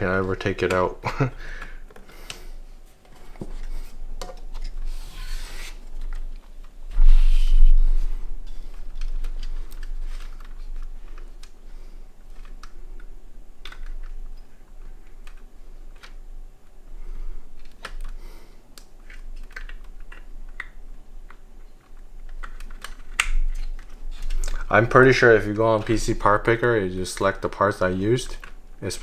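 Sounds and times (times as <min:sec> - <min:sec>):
computer parts clicking and rattling: 0:00.0 - 0:07.0, 0:07.8 - 0:16.8, 0:17.5 - 0:29.0.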